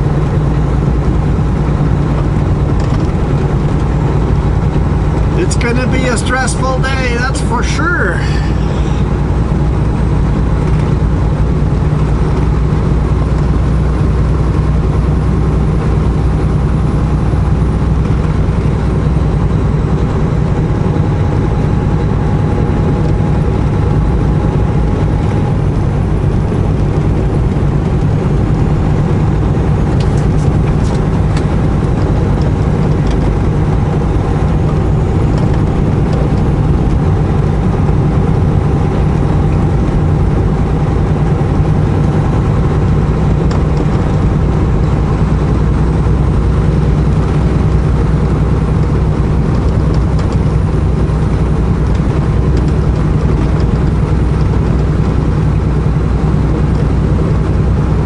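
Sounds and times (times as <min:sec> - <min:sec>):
road noise inside cab: 0:00.0 - 0:58.0
truck diesel engine drone: 0:00.0 - 0:58.0.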